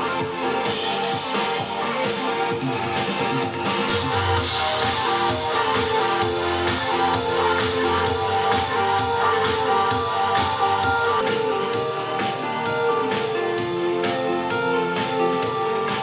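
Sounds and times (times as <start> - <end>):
pop-rock song over speaker: 0.0 - 16.0.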